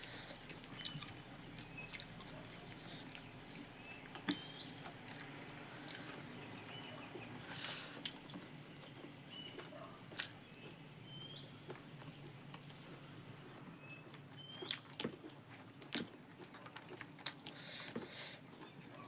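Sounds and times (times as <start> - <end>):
chewing and biting food: 0.0 - 10.8, 14.4 - 19.0
wet mouth clicks and smacks: 10.2 - 10.4.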